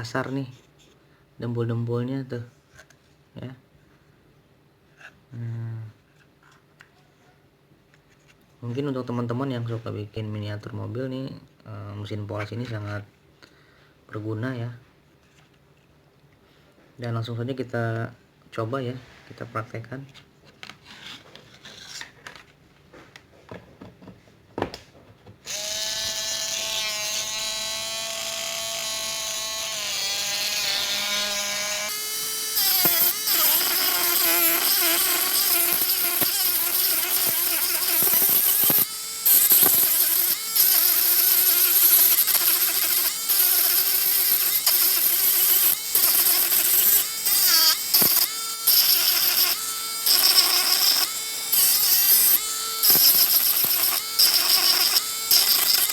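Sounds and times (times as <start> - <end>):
polishing machine whine: 29.1 - 55.9
gritty sanding hiss: 30.1 - 55.9.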